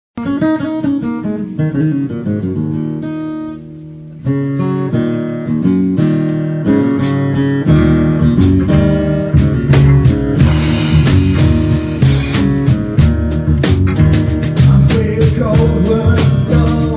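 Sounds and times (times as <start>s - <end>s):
plucked and strummed guitar: 0.2s - 16.9s
bass line: 7.7s - 16.9s
sharp beats: 8.4s - 16.4s.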